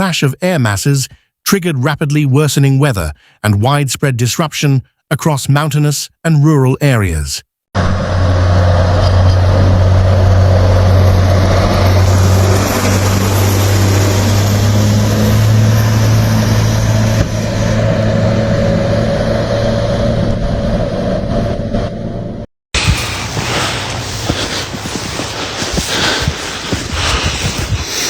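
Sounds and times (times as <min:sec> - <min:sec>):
vehicle engine running: 0:07.8 - 0:27.8
rushing noise: 0:07.8 - 0:28.0.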